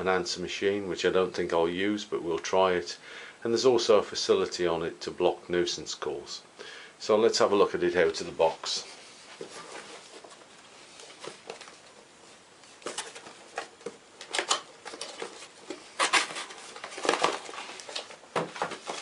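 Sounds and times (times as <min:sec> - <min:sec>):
cardboard packaging rustling and clicking: 0:09.2 - 0:19.0.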